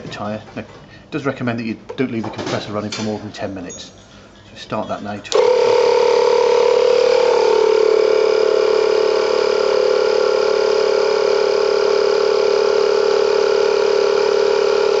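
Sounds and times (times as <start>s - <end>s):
electric air compressor humming: 5.3s - 15.0s.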